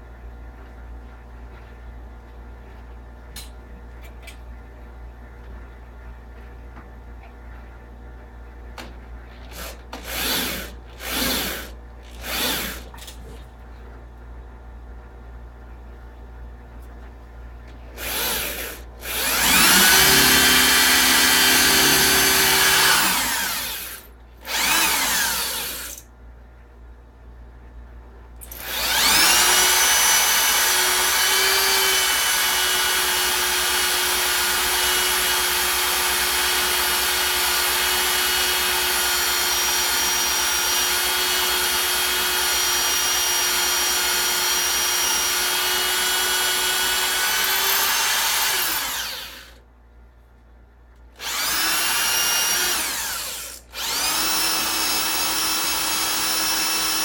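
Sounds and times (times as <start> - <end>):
electric drill drilling rivet: 9.5 - 12.9, 18.0 - 26.0, 28.4 - 49.6, 51.2 - 57.0.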